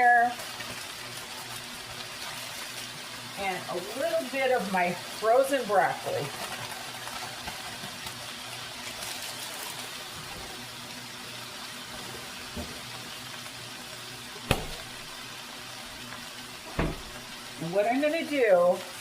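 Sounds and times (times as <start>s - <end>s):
vegetables sizzling in a pan: 0.0s - 19.0s
sharp knock: 14.5s - 14.8s.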